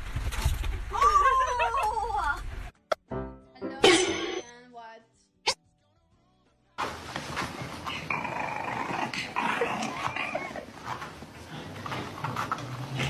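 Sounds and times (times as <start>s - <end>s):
dog growling: 7.6s - 13.0s.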